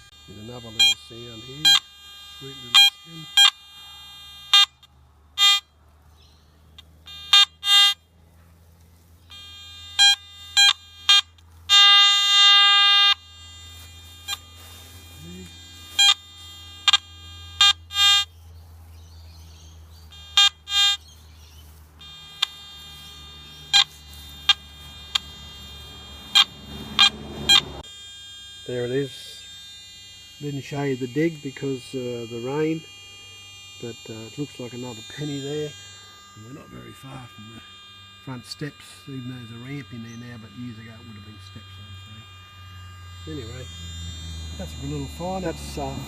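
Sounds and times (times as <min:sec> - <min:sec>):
low steady hum: 0:00.0 - 0:46.0
metal detector short beeps: 0:00.3 - 0:03.6, 0:09.3 - 0:13.2, 0:15.1 - 0:18.3, 0:22.0 - 0:27.7.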